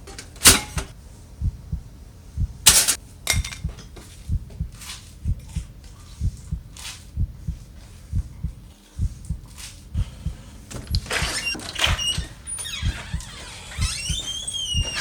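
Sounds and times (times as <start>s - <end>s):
heartbeat thumps: 1.4s - 15.0s
scraping rustling with squeaks: 10.4s - 15.0s.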